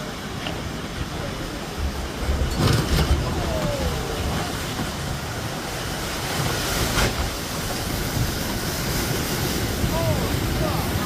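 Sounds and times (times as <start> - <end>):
storm surf rumbling: 0.0 - 11.0
wind: 0.0 - 11.0.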